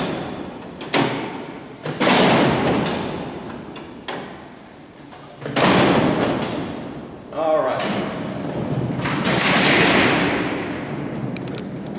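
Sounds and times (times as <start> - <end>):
heavy metal door clanks: 0.0 - 4.4, 5.4 - 6.9, 7.8 - 11.3.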